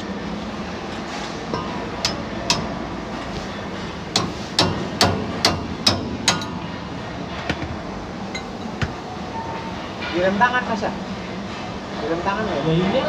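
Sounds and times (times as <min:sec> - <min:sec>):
hammer clanging on metal: 0:01.5 - 0:02.8, 0:04.1 - 0:06.8.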